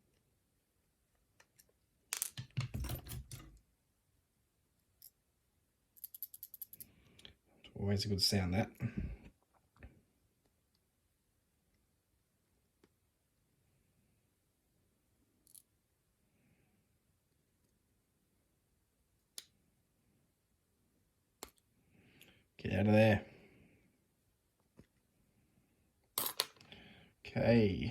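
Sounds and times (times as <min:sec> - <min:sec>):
padlock shackle springing open: 0:02.3 - 0:03.6, 0:26.2 - 0:26.6.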